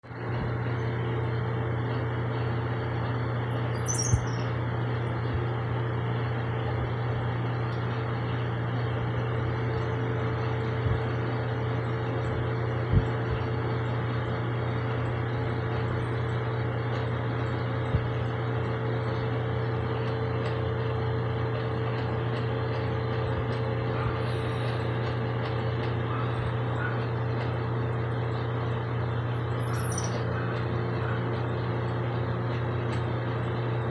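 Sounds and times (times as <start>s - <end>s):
low mechanical hum: 0.0s - 33.9s
bird chirps: 3.7s - 4.6s, 29.5s - 30.3s.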